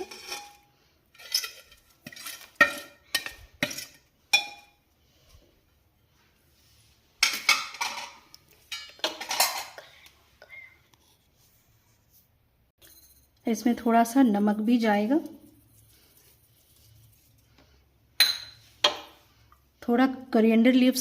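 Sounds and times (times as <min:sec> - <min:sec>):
metal spoon clinking on cookware: 0:00.0 - 0:04.8, 0:07.2 - 0:09.8, 0:18.2 - 0:19.1.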